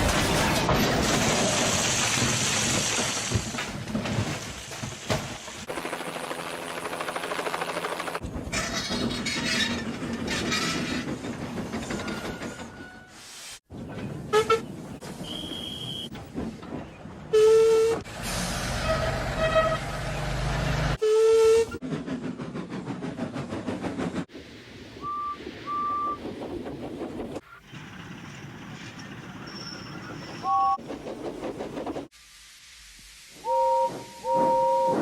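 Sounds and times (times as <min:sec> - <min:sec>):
steam locomotive puffing and hissing: 0:10.7 - 0:13.7, 0:20.2 - 0:35.0
steam whistle toots: 0:15.2 - 0:16.1, 0:21.0 - 0:21.8, 0:33.4 - 0:35.0.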